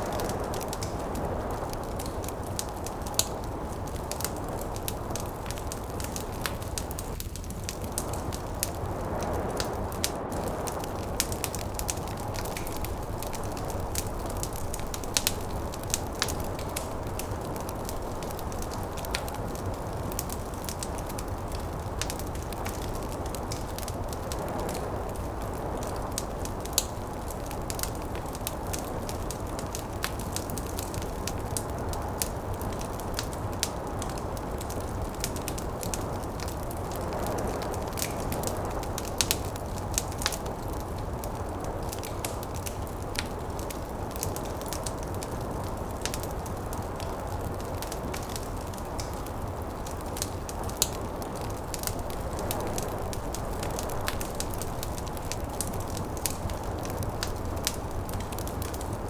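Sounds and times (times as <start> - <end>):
wind and blowing snow: 0.0 - 30.3
wood fire crackling and popping: 0.0 - 59.0.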